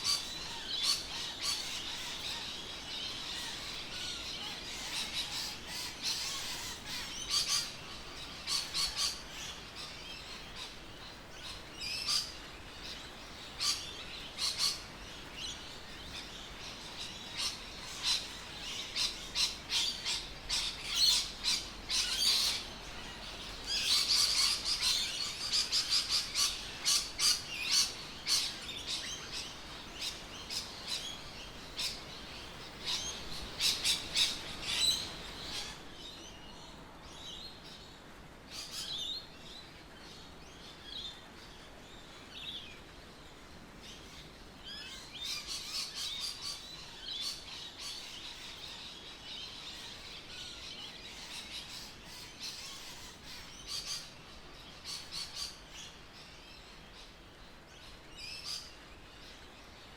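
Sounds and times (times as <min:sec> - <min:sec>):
birds chirping: 0:00.0 - 0:37.8.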